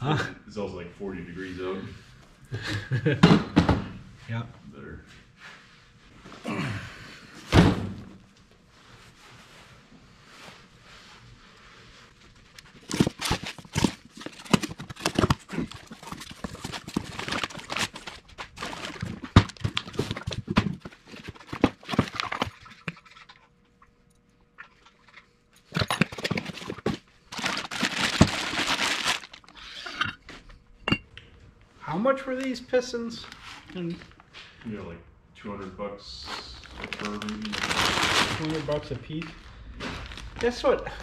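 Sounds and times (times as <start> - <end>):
objects being handled: 11.8 - 31.1
dense scraping or rustling: 36.1 - 41.0.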